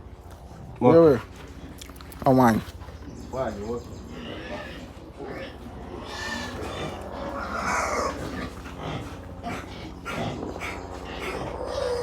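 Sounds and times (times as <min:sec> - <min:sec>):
steady low hum: 0:00.0 - 0:12.0
animal calling: 0:03.2 - 0:12.0.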